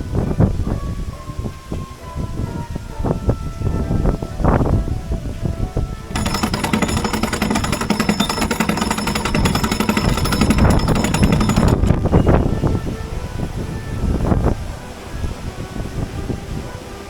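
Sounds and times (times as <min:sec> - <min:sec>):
fast mechanical rattling: 0:06.1 - 0:12.6.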